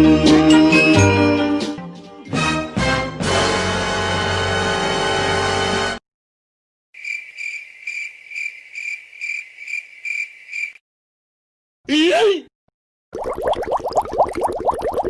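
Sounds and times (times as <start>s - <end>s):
crickets chirping: 7.0s - 10.8s.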